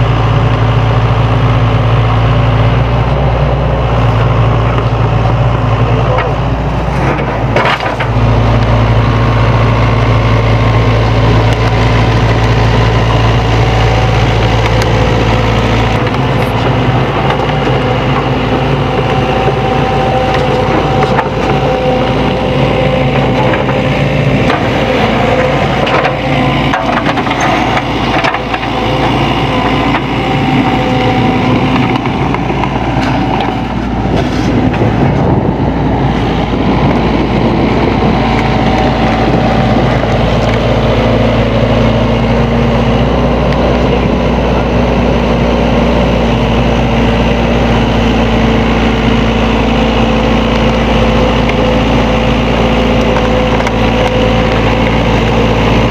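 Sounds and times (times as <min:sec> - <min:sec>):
excavator diesel engine running: 0:00.0 - 0:55.9
clanks and scrapes: 0:33.0 - 0:35.2.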